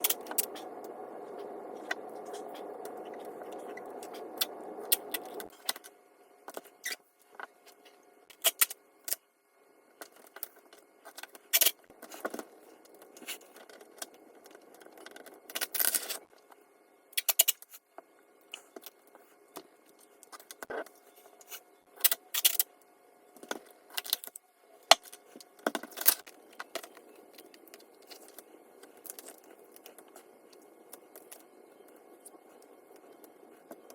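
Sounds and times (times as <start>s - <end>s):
steady hum: 0.0s - 33.9s.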